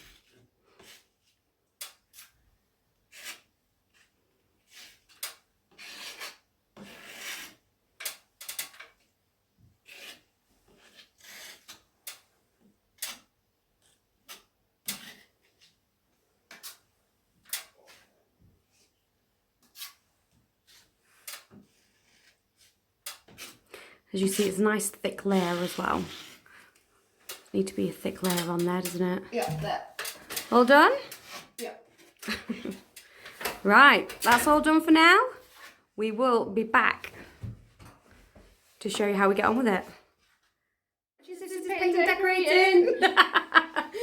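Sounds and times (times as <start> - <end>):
filling knife scraping filler: 0.0 - 1.4, 3.1 - 7.6.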